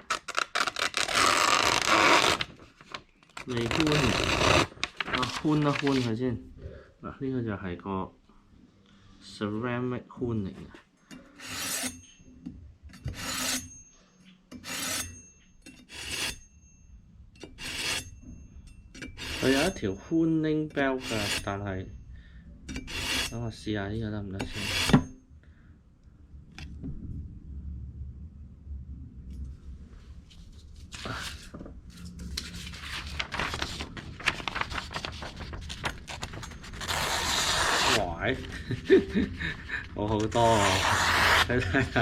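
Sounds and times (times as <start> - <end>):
knife rasping on honing rod: 11.3 - 12.1, 13.1 - 13.8, 14.6 - 15.2, 15.8 - 16.4, 17.5 - 18.2, 19.0 - 19.8, 21.0 - 21.5, 22.7 - 23.4, 24.4 - 25.1
low steady hum: 16.4 - 42.0.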